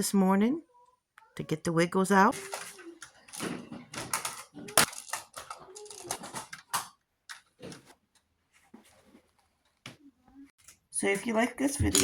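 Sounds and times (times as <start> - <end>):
plastic toys clattering: 2.2 - 8.2
children's voices: 2.3 - 6.5.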